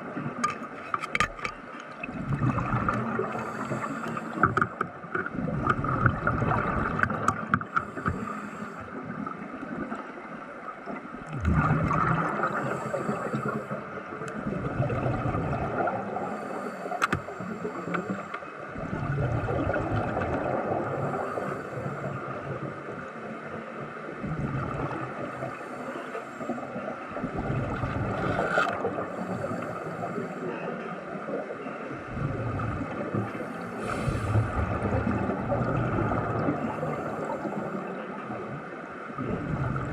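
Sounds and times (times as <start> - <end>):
underwater gurgling and bubbling: 0.0 - 39.9
steady hum: 31.8 - 38.2.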